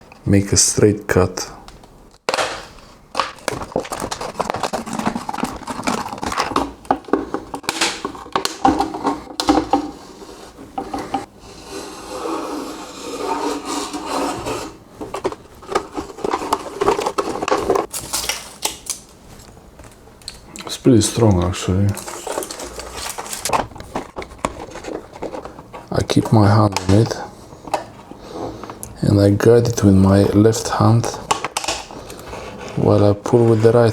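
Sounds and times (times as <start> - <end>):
plastic bottle crackling: 2.2 - 9.9, 15.0 - 19.1
rubbing on plastic: 3.4 - 17.9.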